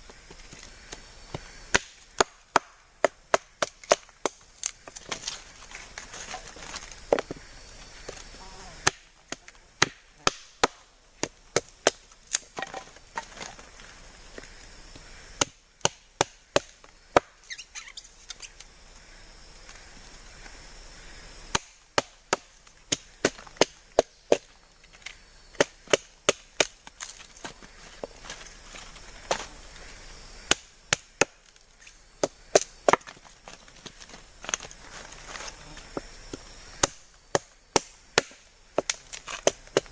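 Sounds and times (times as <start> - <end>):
blade chopping wood: 8.8 - 13.6, 21.5 - 28.2, 36.7 - 39.9
steady high hiss: 17.4 - 21.8, 27.0 - 30.9.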